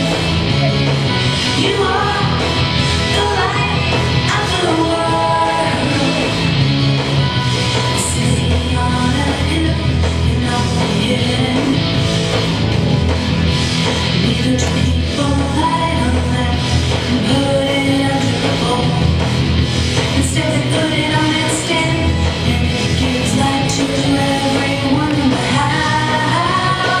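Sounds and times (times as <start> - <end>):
song with band accompaniment: 0.0 - 27.0.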